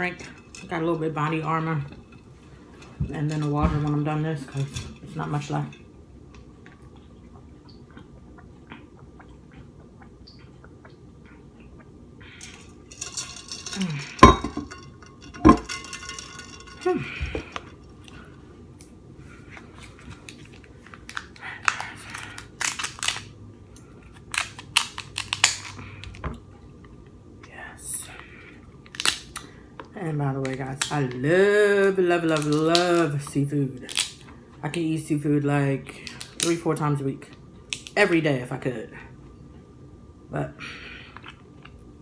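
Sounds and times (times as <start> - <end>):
utensils knocking on a plate: 13.0 - 16.8
crab shells cracking: 20.2 - 23.4, 24.1 - 26.2, 28.8 - 29.5, 32.3 - 33.1, 33.9 - 34.3, 36.0 - 36.6.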